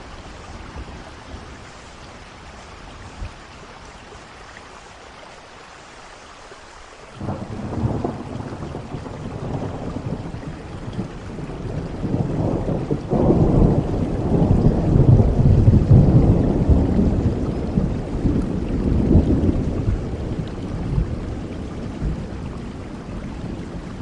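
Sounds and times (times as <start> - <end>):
steady rain: 0.0 - 24.0
thunder rolling: 7.2 - 24.0.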